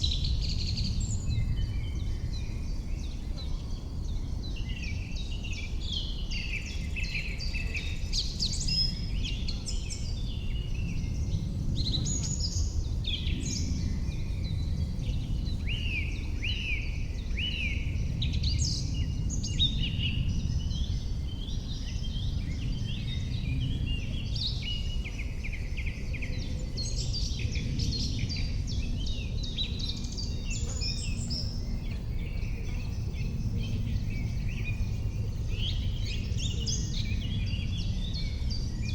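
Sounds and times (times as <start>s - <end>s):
songbirds singing: 0.0s - 38.9s
steady low rumble: 17.9s - 38.9s.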